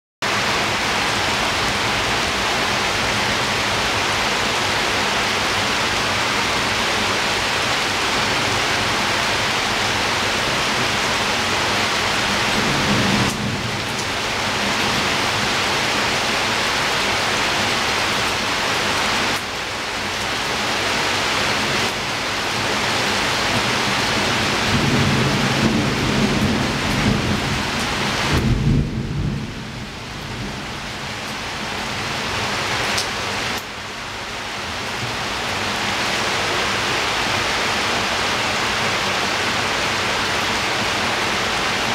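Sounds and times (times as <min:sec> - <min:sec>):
heavy rain on window: 0:00.2 - 0:41.9
thunder rumbles: 0:08.2 - 0:15.9, 0:23.6 - 0:32.4.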